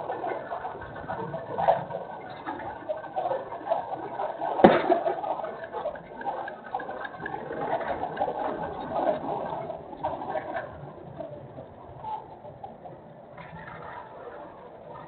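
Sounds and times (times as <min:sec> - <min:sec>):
sharp knock: 0:04.6 - 0:04.9.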